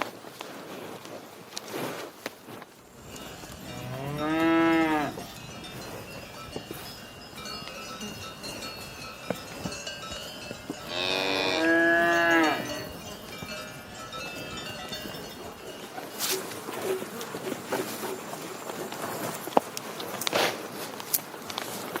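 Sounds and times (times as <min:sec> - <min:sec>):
cowbells ringing faintly: 0:02.8 - 0:19.5
cow mooing: 0:03.7 - 0:05.2, 0:10.9 - 0:12.9.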